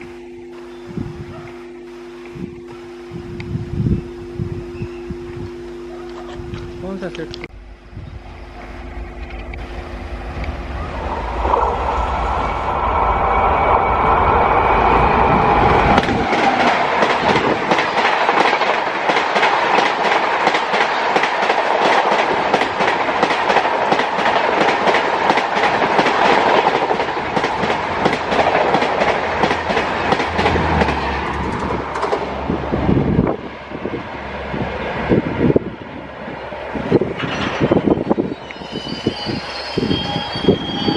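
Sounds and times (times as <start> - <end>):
passenger train passing: 0.0 - 5.4, 6.7 - 40.9
train wheels clattering over rail joints: 16.0 - 32.4, 36.8 - 38.4.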